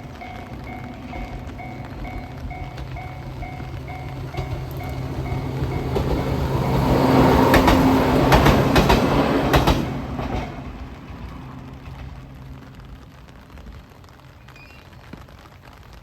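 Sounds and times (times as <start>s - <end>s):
train wheels clacking over rail joints: 0.0s - 12.2s.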